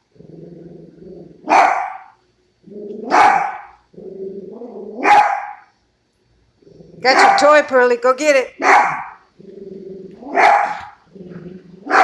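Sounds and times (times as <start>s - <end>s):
dog barking: 1.5s - 2.2s, 3.1s - 3.8s, 5.0s - 5.7s, 7.1s - 7.6s, 8.6s - 9.2s, 10.3s - 11.0s.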